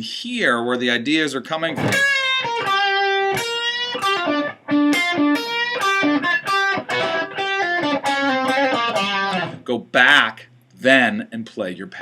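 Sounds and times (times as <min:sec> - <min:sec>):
electric guitar blues line: 0:01.7 - 0:09.6.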